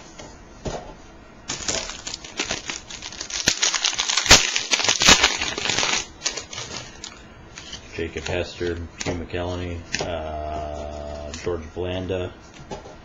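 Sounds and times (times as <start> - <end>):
foil pack tearing: 1.5 - 7.1
wrapper crinkling: 1.5 - 7.2.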